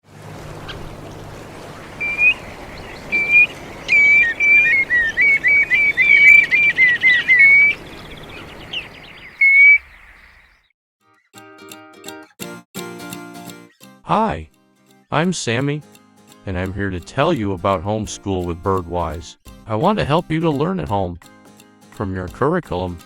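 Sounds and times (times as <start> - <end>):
background hiss: 0.9 - 10.4
bird whistling notes: 1.8 - 10.6.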